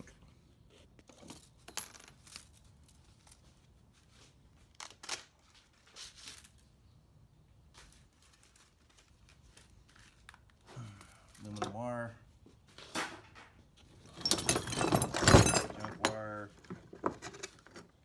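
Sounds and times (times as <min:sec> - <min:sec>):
metal pieces clinking: 0:01.2 - 0:03.5, 0:14.0 - 0:17.9.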